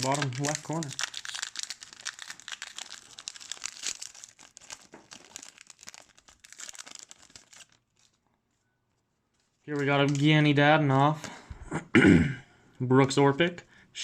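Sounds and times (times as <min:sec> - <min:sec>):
foil wrapper crinkling: 0:00.0 - 0:08.4.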